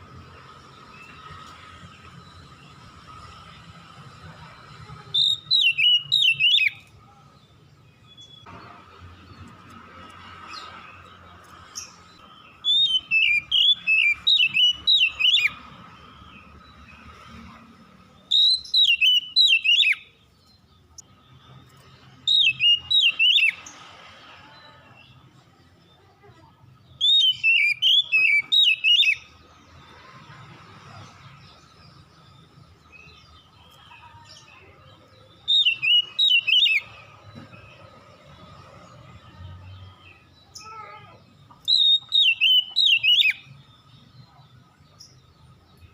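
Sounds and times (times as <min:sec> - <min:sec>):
songbird whistling phrases: 0:05.1 - 0:06.9, 0:12.6 - 0:15.6, 0:18.3 - 0:20.1, 0:22.3 - 0:23.6, 0:27.0 - 0:29.3, 0:35.4 - 0:37.0, 0:41.6 - 0:43.6.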